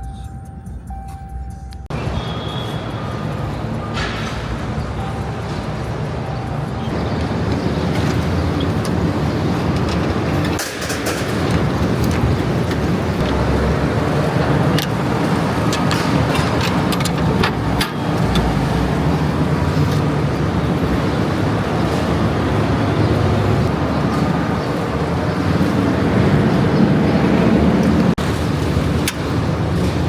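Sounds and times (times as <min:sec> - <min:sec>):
vehicle engine rumbling: 0:00.0 - 0:30.0
knocks and clatters: 0:06.9 - 0:24.8.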